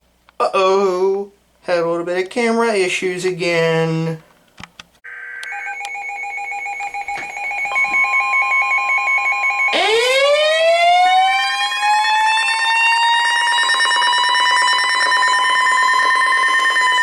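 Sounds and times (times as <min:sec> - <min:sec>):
siren wailing: 0:05.1 - 0:17.0.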